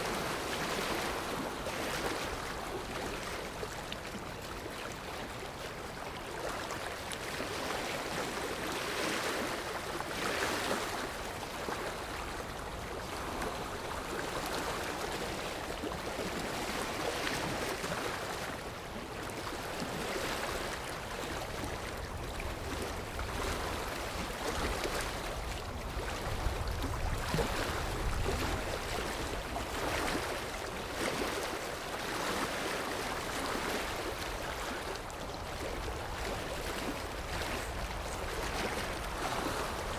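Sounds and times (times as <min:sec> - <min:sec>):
sea waves washing in: 0:06.4 - 0:39.9
deep rumble of surf: 0:19.0 - 0:31.9, 0:32.6 - 0:39.9.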